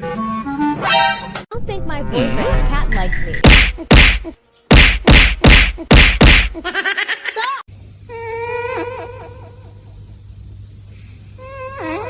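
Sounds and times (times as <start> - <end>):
sharp loud smacks: 3.4 - 6.6.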